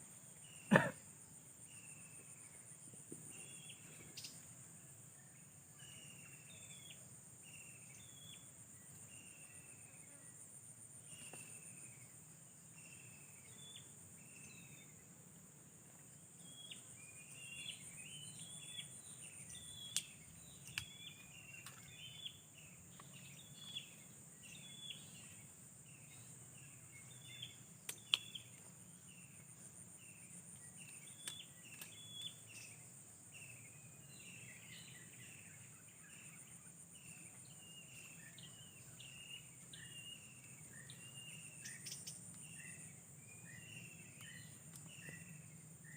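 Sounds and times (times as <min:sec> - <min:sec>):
bird chirping: 0:16.0 - 0:45.9.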